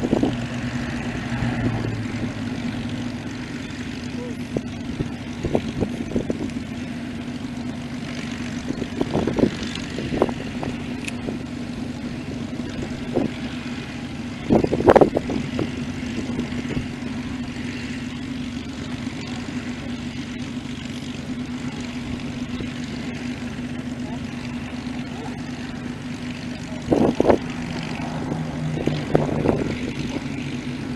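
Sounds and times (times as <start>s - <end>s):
propeller aircraft engines droning: 0.0s - 30.9s.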